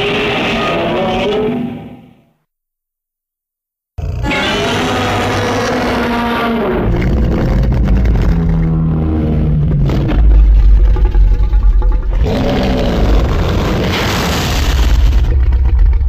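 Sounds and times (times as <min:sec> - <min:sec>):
monster roar: 0:04.0 - 0:16.0
deep heavy rumble: 0:06.2 - 0:16.0.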